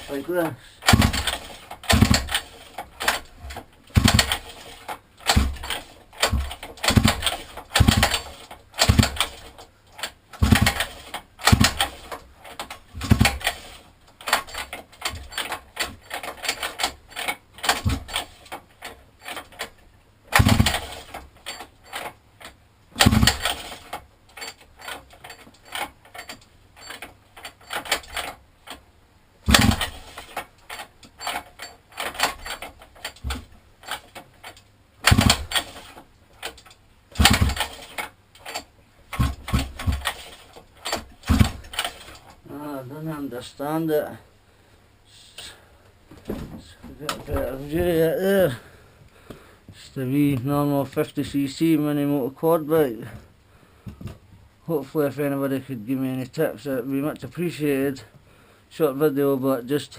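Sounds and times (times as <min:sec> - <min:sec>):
engine turning over without firing: 0:00.0 - 0:28.8, 0:29.4 - 0:42.3
recoil pull-starter being yanked: 0:00.8 - 0:28.8, 0:29.5 - 0:42.4.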